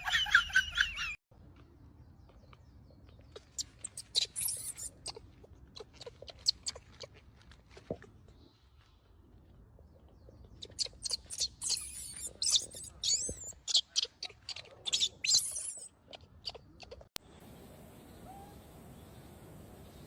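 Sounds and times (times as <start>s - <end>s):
young macaque squealing: 3.4s - 5.2s, 10.6s - 17.0s.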